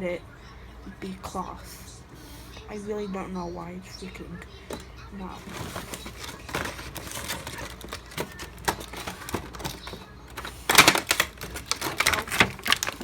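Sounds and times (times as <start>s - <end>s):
toy packaging clicking and crackling: 4.6s - 13.0s.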